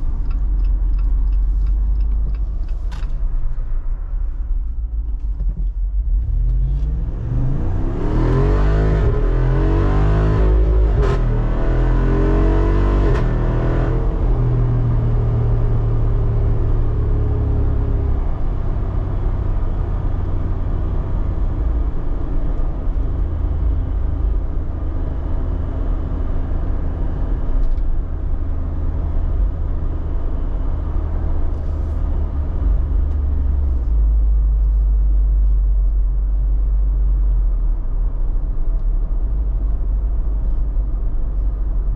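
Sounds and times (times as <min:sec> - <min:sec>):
car engine accelerating: 0:04.5 - 0:41.9.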